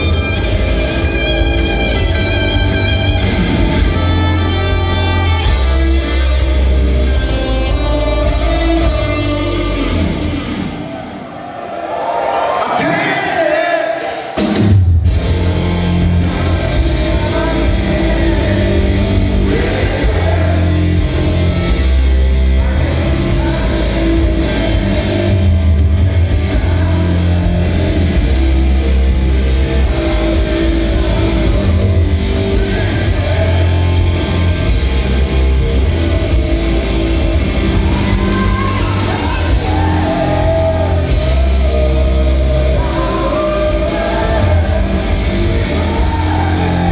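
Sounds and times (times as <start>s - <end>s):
drum kit: 0.0s - 9.7s, 14.0s - 46.9s
bass guitar: 0.0s - 10.8s, 14.4s - 46.9s
electric guitar: 0.0s - 11.2s, 14.3s - 46.9s
person singing: 37.4s - 46.9s.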